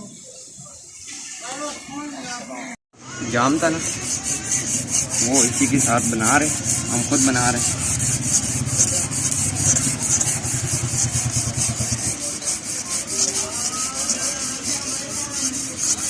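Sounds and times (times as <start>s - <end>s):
rubbing strokes abrading metal: 3.4s - 16.0s.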